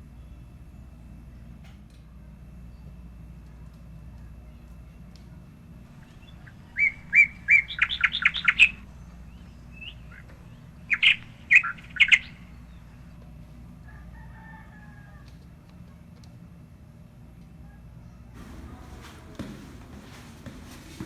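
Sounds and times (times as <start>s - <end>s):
low background hum: 0.0s - 21.0s
bird chirping: 5.9s - 13.2s.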